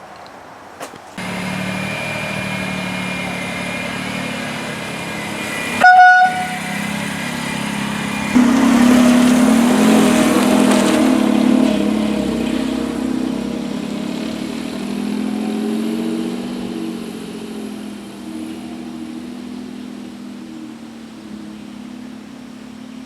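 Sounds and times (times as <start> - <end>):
air horn blaring with wavering pitch: 1.2 - 13.2
small car engine pulling away: 1.2 - 23.0.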